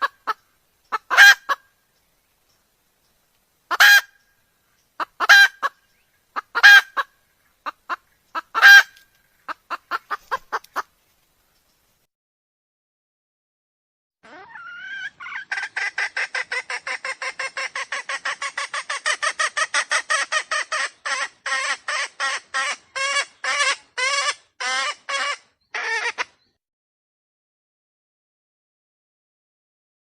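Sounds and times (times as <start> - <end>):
junglefowl clucking calls: 0.0 - 1.7, 3.7 - 4.2, 4.9 - 10.9, 14.2 - 26.4.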